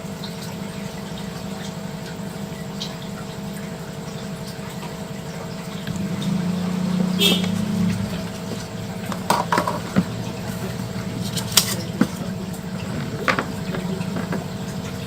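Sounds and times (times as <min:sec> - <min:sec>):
steady low hum: 0:00.0 - 0:15.0
clicks and taps of handled parts: 0:12.9 - 0:14.4.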